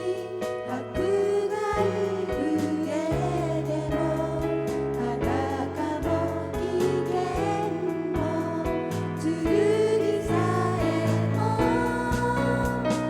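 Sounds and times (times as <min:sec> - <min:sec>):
voices singing worship song: 0:00.0 - 0:13.0
instrumental accompaniment with beat: 0:04.1 - 0:13.0.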